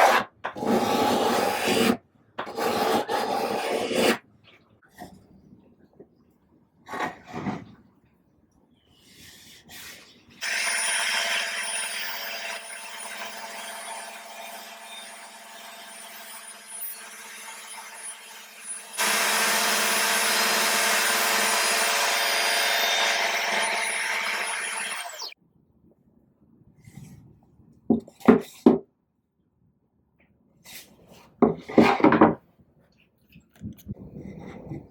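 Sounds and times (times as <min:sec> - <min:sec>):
woodworking power tool motor: 0:10.4 - 0:25.4.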